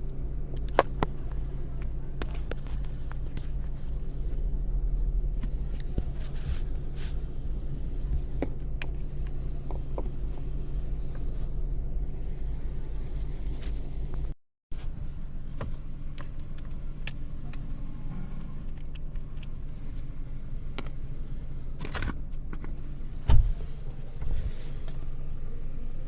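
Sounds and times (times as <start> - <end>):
car engine humming: 0.0 - 14.4.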